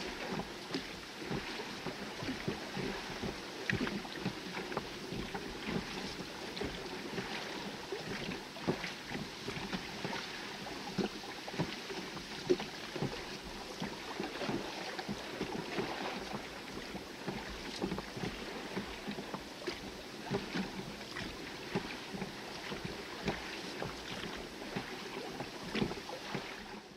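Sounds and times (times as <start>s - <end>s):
oars dipping in water: 0.0s - 26.9s
water lapping against hull: 0.0s - 26.9s
knocks on boat: 10.9s - 26.6s.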